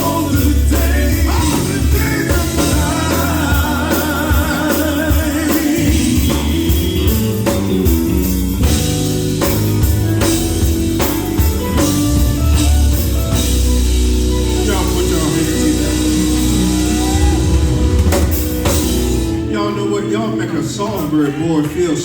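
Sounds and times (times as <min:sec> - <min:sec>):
person singing with vibrato: 0:00.0 - 0:07.5
gospel band playing: 0:00.0 - 0:22.0.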